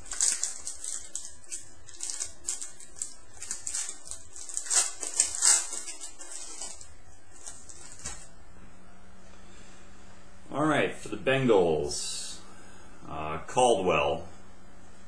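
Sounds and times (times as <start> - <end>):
card pack wrapper crinkling: 0.0 - 8.3.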